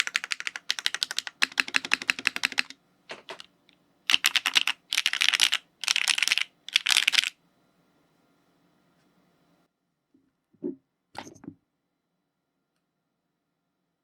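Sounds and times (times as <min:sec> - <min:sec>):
mechanical keyboard typing: 0:00.0 - 0:03.5, 0:04.1 - 0:07.3.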